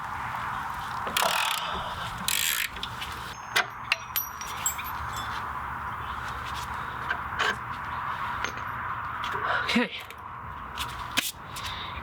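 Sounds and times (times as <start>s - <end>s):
ratchet wrench spinning: 1.2s - 1.7s, 2.3s - 2.8s
metallic clinks with ringing: 3.3s - 5.5s.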